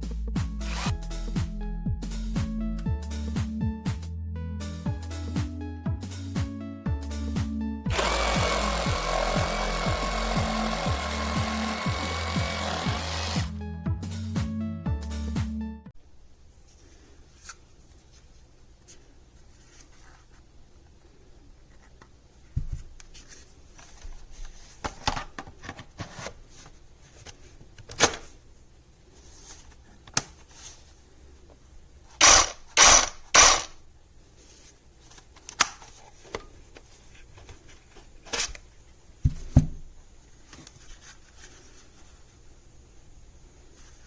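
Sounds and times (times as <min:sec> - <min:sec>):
loud noisy bursts: 0:07.9 - 0:13.5, 0:32.2 - 0:33.7.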